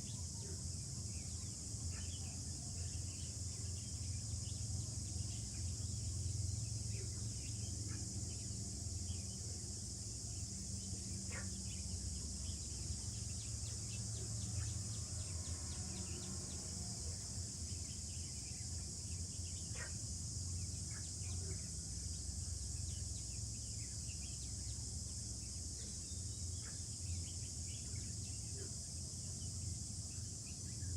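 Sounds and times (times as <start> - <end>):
high-pitched insect chorus: 0.0 - 30.9.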